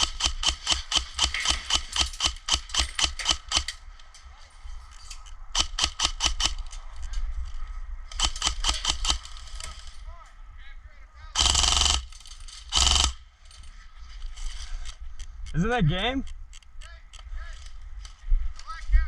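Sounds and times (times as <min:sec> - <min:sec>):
airsoft gun rapid firing: 0:00.0 - 0:03.7, 0:05.6 - 0:06.6, 0:08.2 - 0:09.7, 0:11.4 - 0:13.2.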